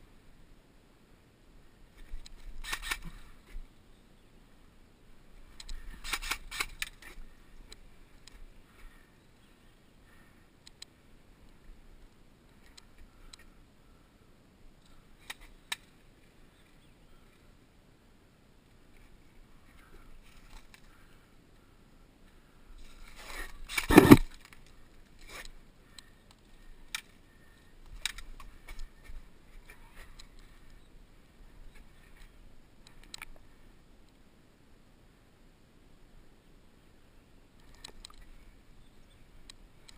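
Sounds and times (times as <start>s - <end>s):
sharp clicks: 10.6s - 11.0s, 23.7s - 24.7s
rustling thump: 23.4s - 24.4s.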